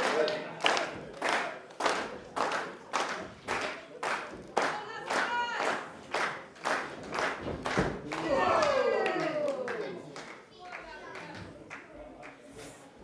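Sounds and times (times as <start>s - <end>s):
crowd clapping in unison: 0.0s - 12.5s.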